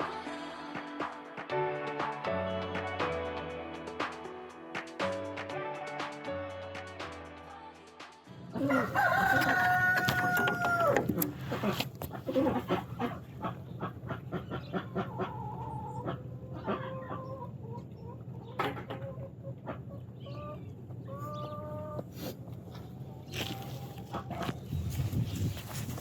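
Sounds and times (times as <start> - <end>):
chickens clucking: 8.5 - 25.9.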